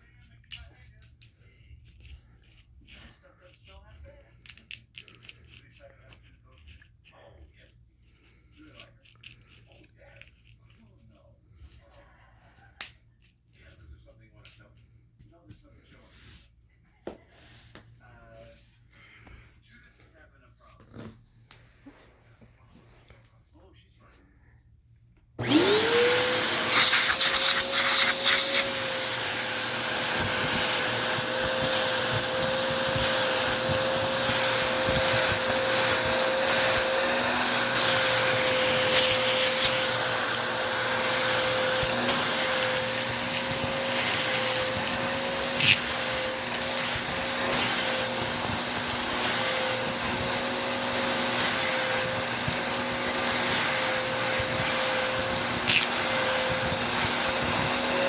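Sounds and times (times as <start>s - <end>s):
vacuum cleaner motor whine: 25.4s - 58.0s.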